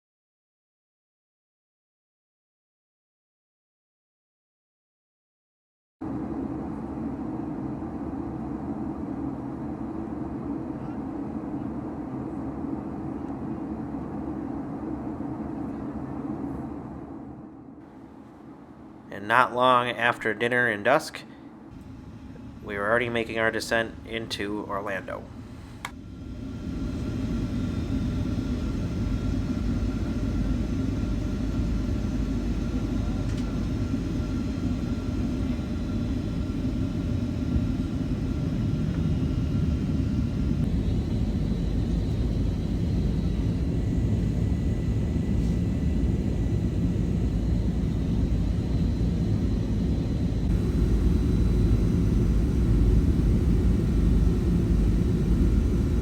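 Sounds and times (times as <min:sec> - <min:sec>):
airliner engines rumbling: 0:06.0 - 0:56.0
faint steady tones: 0:21.3 - 0:56.0.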